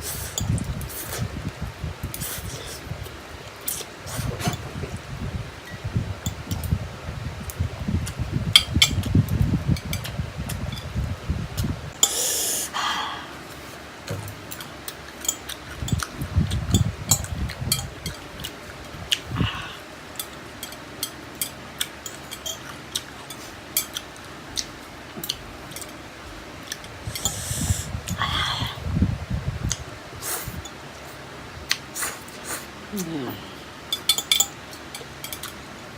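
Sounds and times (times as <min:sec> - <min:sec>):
noisy breaths drawn in: 0:27.1 - 0:28.9.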